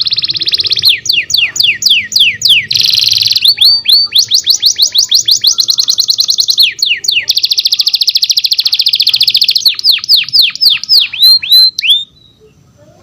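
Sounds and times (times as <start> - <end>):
canary singing: 0.0 - 13.0.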